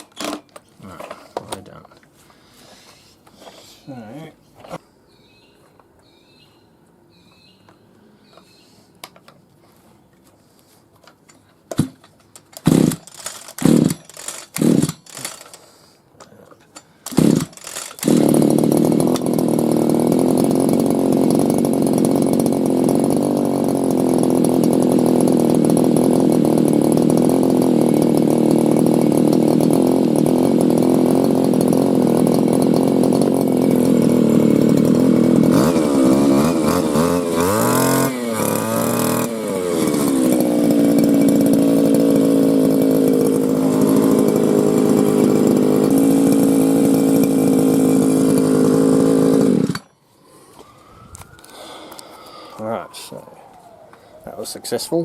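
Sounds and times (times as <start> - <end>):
string trimmer engine starting and revving: 11.7 - 15.6, 16.8 - 49.9.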